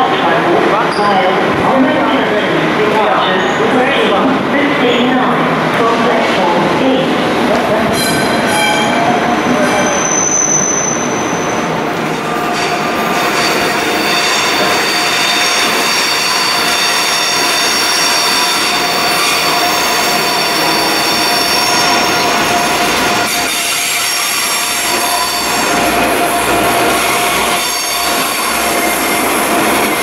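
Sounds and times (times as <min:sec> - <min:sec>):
rumble of train cars: 0:00.0 - 0:30.0
train wheels squealing: 0:08.0 - 0:11.8, 0:12.5 - 0:26.0, 0:27.0 - 0:30.0.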